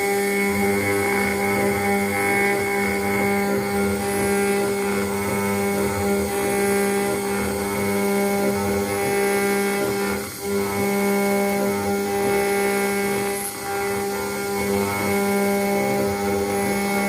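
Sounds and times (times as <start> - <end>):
cutter engraving metal: 0.0 - 17.0
router spindle whine: 0.0 - 17.0.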